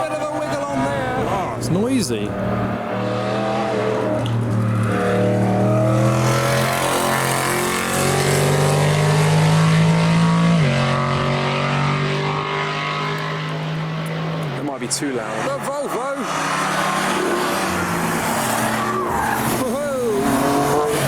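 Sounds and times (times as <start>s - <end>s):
car engine accelerating hard: 0.0s - 21.0s.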